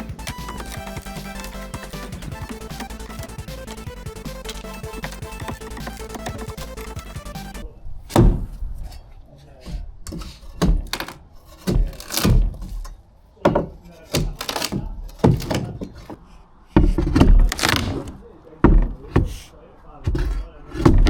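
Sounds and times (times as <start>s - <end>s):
heavy timber thunks and knocks: 0.0s - 8.6s, 10.1s - 12.8s, 13.4s - 16.0s, 16.8s - 19.4s, 20.1s - 21.0s.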